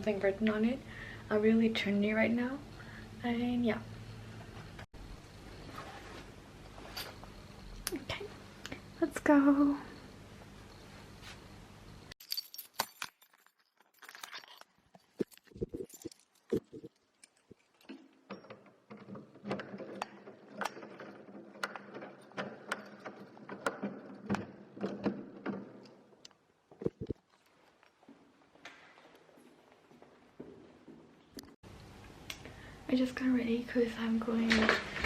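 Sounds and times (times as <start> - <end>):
keys jangling: 12.2 - 17.9
sharp clicks and knocks: 15.2 - 27.3.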